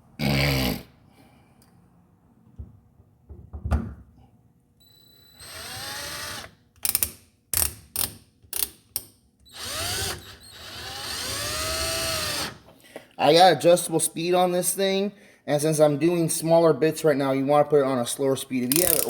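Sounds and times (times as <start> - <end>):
drill driving screws: 5.2 - 7.0, 9.5 - 12.6.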